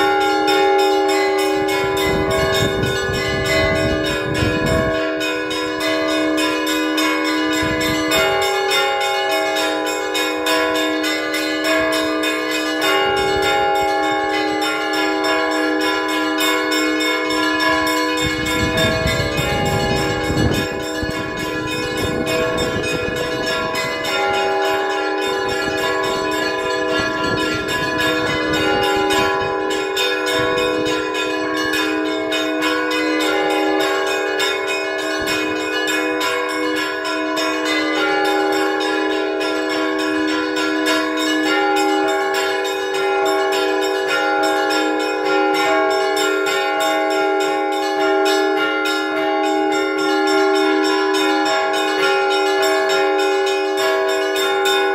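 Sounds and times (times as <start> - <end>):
large bells ringing: 0.0 - 54.9
small bells ringing rapidly: 0.0 - 54.9.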